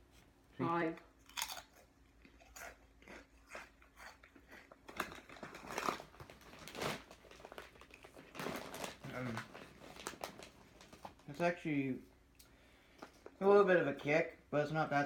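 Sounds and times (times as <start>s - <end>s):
chewing crisp chips: 1.1s - 11.4s.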